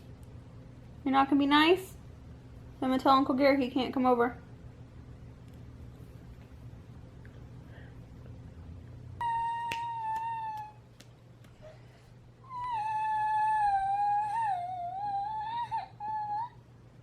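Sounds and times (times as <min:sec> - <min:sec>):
young child crying: 0:09.2 - 0:10.8, 0:12.4 - 0:16.6.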